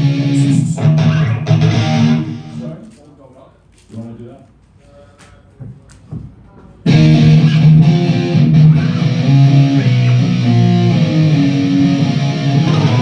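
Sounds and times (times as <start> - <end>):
rock band playing loud chords: 0.0 - 2.7, 6.9 - 13.0.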